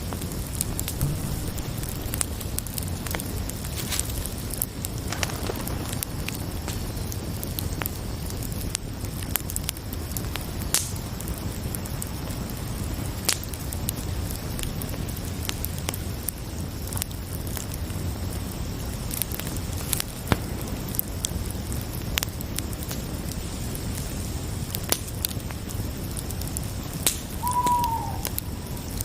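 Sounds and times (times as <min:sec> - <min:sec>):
campfire crackling and popping: 0:00.0 - 0:29.0
crickets chirping: 0:00.6 - 0:08.9, 0:25.9 - 0:29.0.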